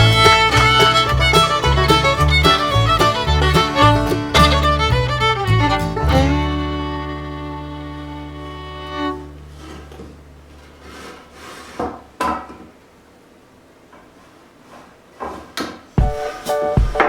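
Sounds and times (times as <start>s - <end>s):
faint scraping: 9.1s - 12.1s
music with deep beat: 16.0s - 17.0s.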